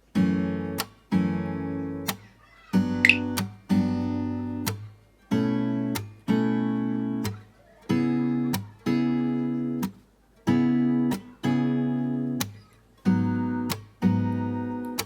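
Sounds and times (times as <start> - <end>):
acoustic guitar strumming chords: 2.8 - 7.3, 10.5 - 15.0.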